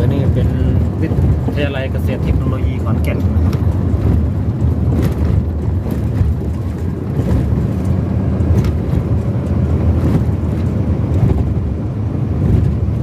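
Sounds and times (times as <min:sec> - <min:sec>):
vehicle engine and road rumble: 0:00.0 - 0:13.0.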